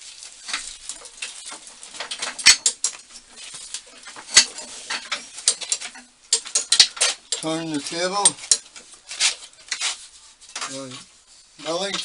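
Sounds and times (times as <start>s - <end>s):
metal tooling clinks and knocks: 0.5s - 8.9s
loud metal clanks: 1.0s - 7.4s.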